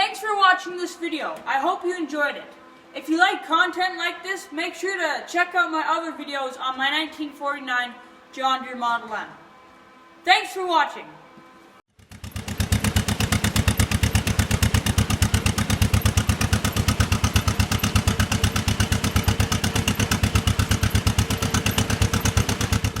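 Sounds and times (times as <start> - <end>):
tractor engine running: 11.9 - 23.0.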